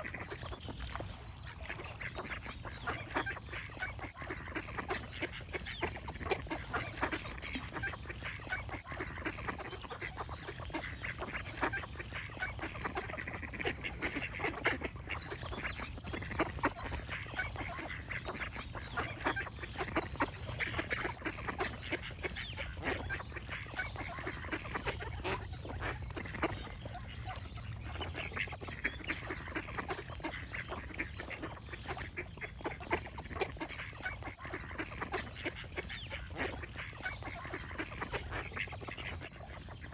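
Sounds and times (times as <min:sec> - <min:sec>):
ducks quacking and honking: 0:00.0 - 0:39.9.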